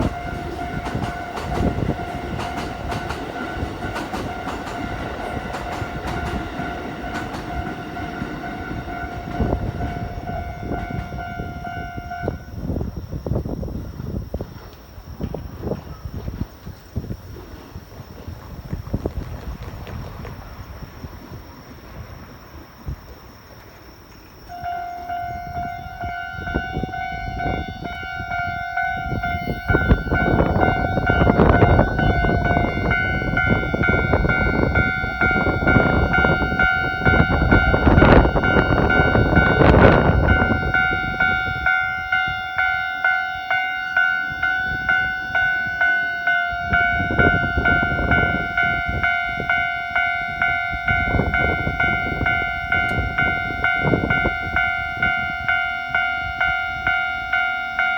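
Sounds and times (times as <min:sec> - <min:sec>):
train wheels clattering over rail joints: 0:00.0 - 0:11.3
level crossing warning bell: 0:00.0 - 0:13.4, 0:24.4 - 0:57.9.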